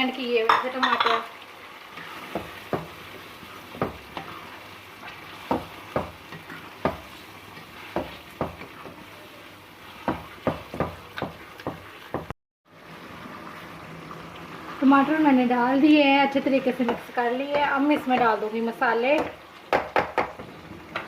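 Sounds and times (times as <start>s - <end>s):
chicken sizzling in a pan: 0.0s - 21.0s
spoon knocking against pan: 0.4s - 1.2s, 3.8s - 4.3s, 5.4s - 7.1s, 8.0s - 9.0s, 10.0s - 12.3s, 19.1s - 20.4s.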